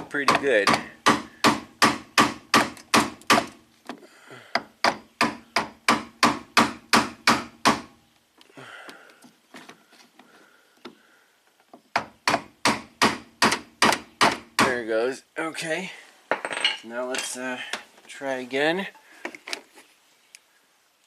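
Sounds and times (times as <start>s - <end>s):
rapid repeated knocking: 0.2s - 3.5s, 12.0s - 14.7s.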